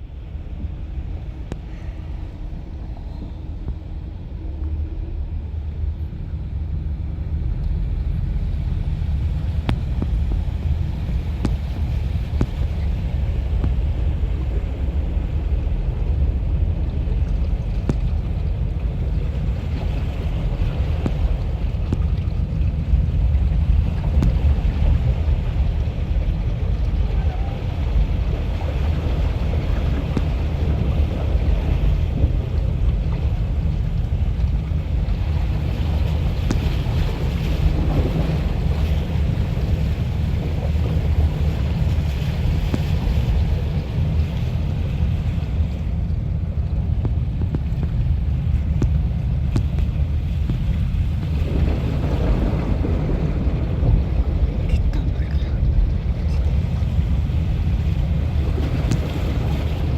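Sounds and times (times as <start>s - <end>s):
wind buffeting microphone: 0.0s - 59.9s
heavy rain falling: 47.2s - 59.9s.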